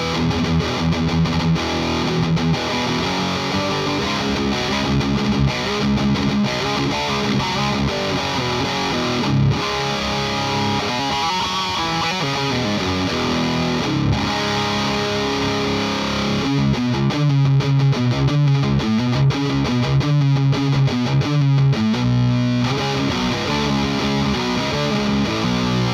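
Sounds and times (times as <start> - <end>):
distorted electric guitar: 0.0 - 25.9.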